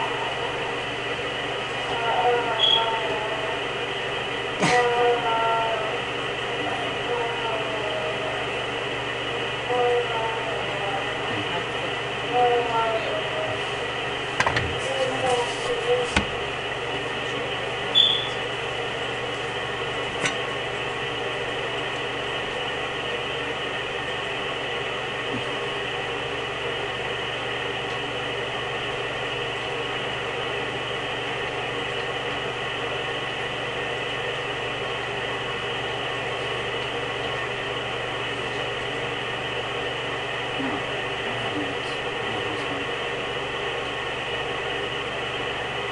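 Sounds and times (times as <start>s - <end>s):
appliance hum and hiss: 0.0s - 45.9s
high squeak: 2.6s - 2.9s, 18.0s - 18.4s.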